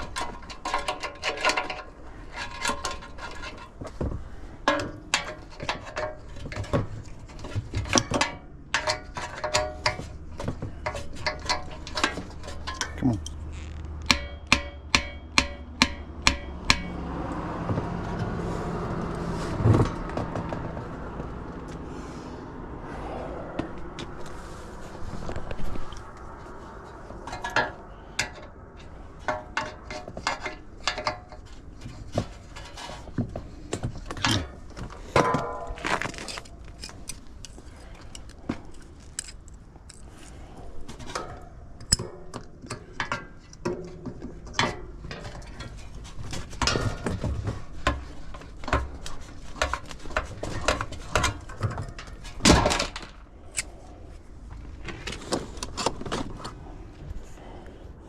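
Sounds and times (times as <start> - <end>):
metal tools clinking and knocking: 0.0 - 17.0.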